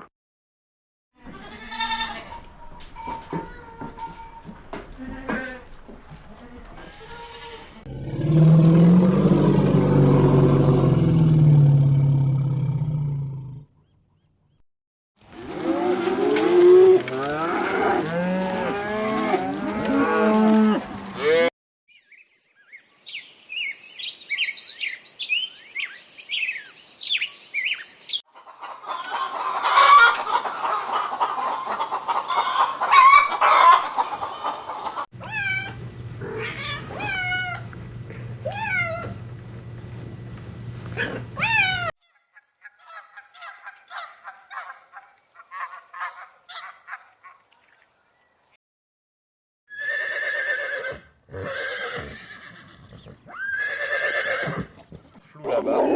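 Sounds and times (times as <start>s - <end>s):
chickens clucking: 1.4s - 7.8s, 28.3s - 41.9s
cow mooing: 7.8s - 13.4s, 15.5s - 21.5s, 35.2s - 39.3s.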